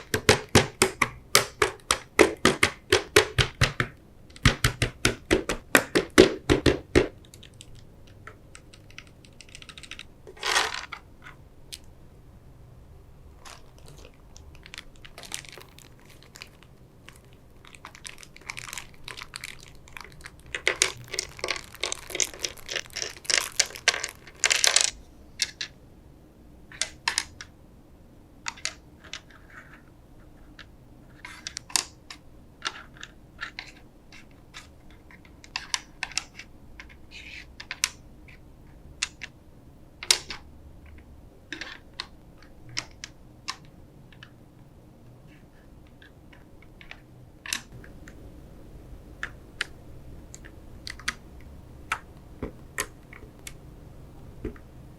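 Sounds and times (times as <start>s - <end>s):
plastic keyboard parts clattering: 0.0s - 11.4s, 13.4s - 25.7s.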